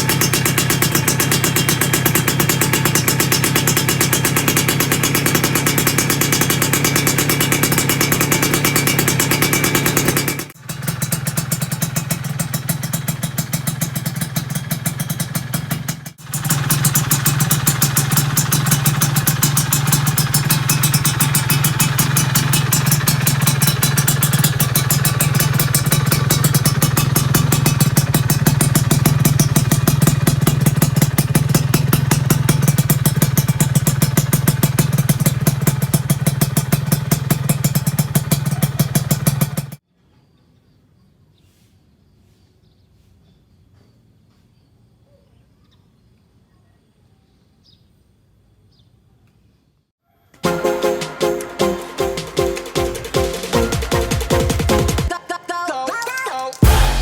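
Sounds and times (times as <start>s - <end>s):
two-stroke engine exhaust note: 0.0s - 39.8s, 50.4s - 55.1s, 56.6s - 57.0s.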